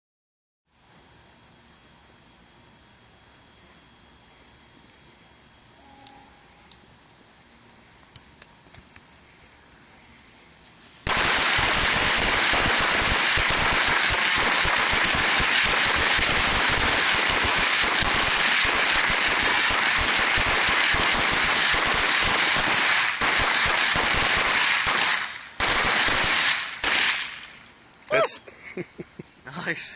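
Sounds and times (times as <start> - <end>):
firecrackers crackling: 11.0 - 27.7.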